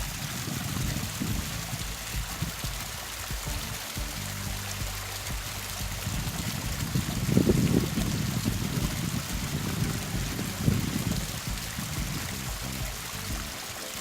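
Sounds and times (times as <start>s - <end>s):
low rumbles: 0.0s - 13.6s
running water rushing: 0.0s - 14.0s.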